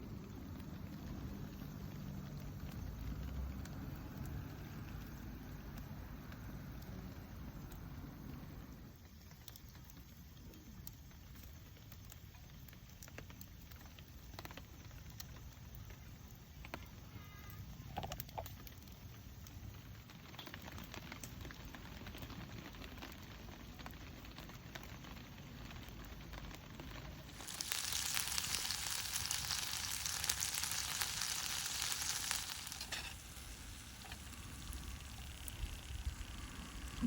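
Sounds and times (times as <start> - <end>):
food sizzling in a pan: 26.1 - 37.0.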